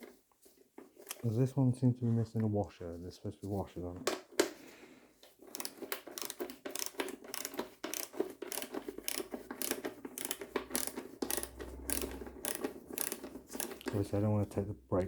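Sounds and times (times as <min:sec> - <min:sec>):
socket ratchet clicking: 0:05.5 - 0:13.9.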